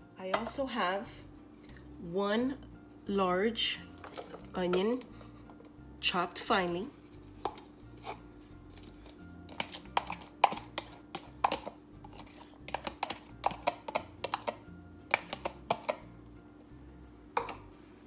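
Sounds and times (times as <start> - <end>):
faint background music: 0.0 - 18.0
utensils tapping on cutting board: 9.5 - 16.1, 17.4 - 17.7.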